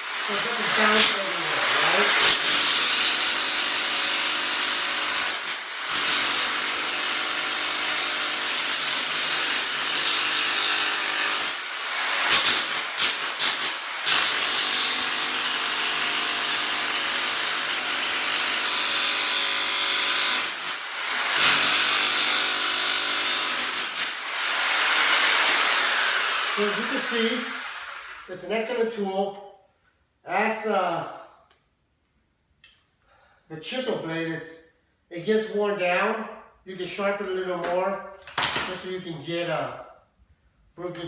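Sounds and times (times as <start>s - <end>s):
rotary hammer chipping concrete: 1.9s - 25.9s.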